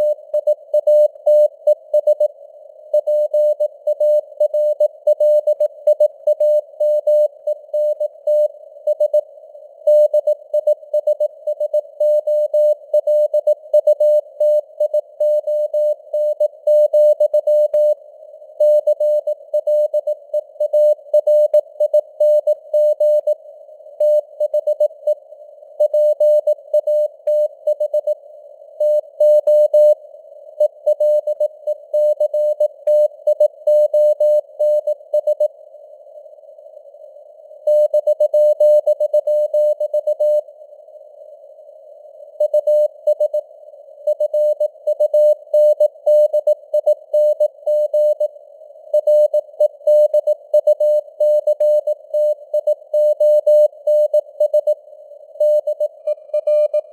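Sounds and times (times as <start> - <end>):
morse code beeps: 55.4 - 56.9.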